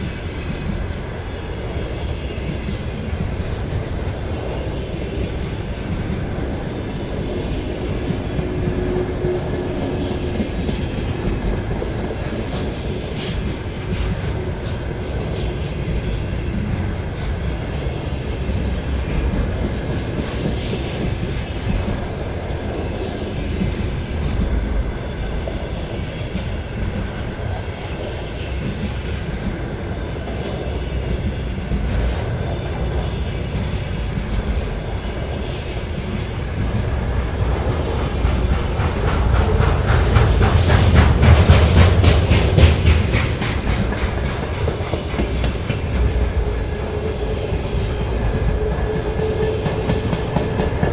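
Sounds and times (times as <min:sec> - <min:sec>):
freight train wagons clacking: 0:00.0 - 0:50.9
fast rhythmic pulsing of wagons: 0:31.0 - 0:50.9.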